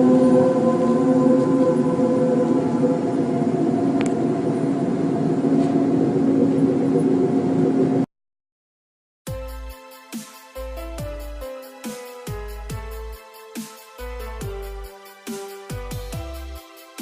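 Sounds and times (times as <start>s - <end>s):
electronic music: 9.3s - 17.0s.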